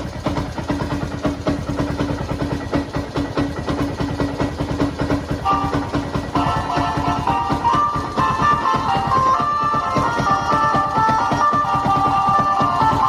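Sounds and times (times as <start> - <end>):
motorcycle engine idling: 0.0 - 13.0.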